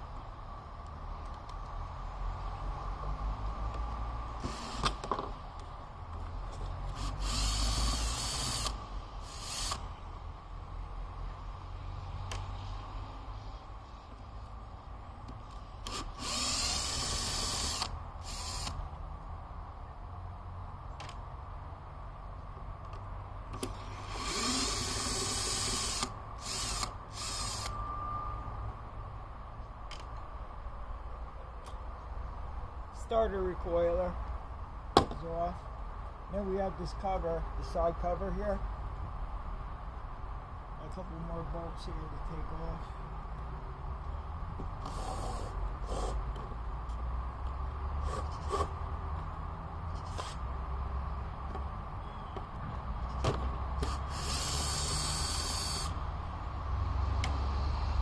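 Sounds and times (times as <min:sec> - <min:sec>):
cordless screw gun whining: 0:04.4 - 0:05.0, 0:06.9 - 0:09.9, 0:15.8 - 0:18.8, 0:23.6 - 0:27.8, 0:44.8 - 0:46.2, 0:50.0 - 0:50.4, 0:53.8 - 0:56.0.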